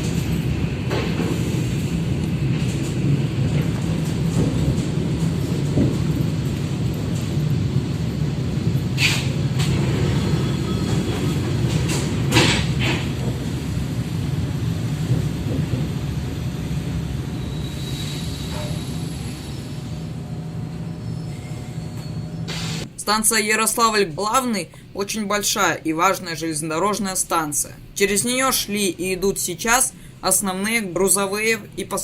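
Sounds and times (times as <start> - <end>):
train wheels on track: 0.0 - 24.5.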